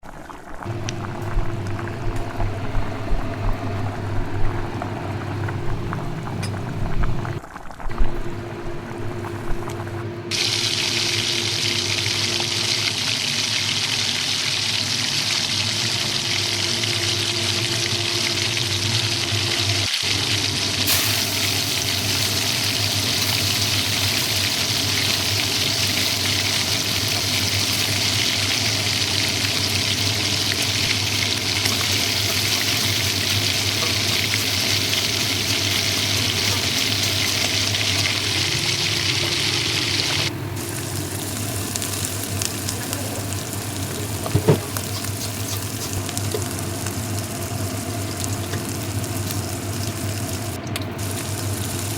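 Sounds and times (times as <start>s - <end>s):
faint hum: 0.6s - 13.6s
water running from a tap: 10.3s - 51.9s.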